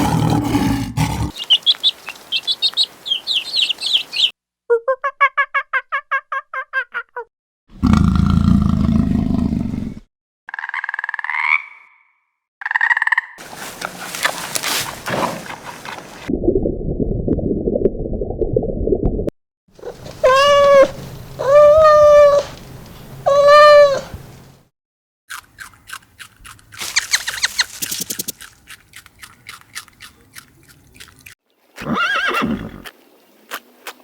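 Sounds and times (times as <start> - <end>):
cat meowing: 20.2 - 22.5, 23.3 - 24.1.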